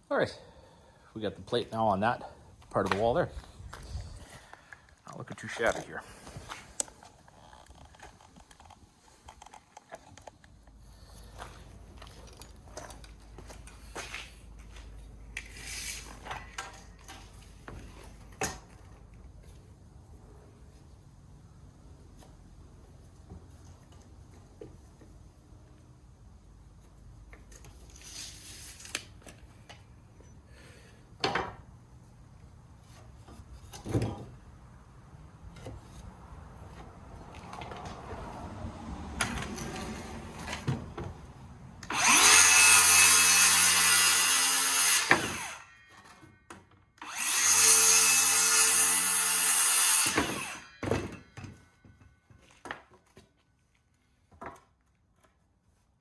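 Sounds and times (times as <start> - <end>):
power tool working wood: 41.8 - 45.7, 47.0 - 50.7.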